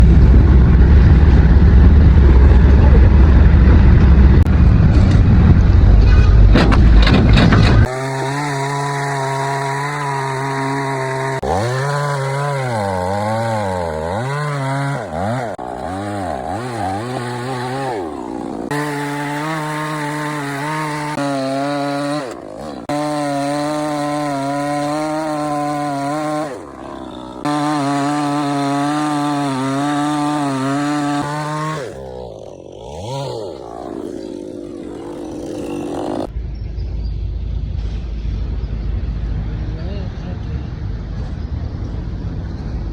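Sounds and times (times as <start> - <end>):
chainsaw cutting wood: 6.6 - 36.3.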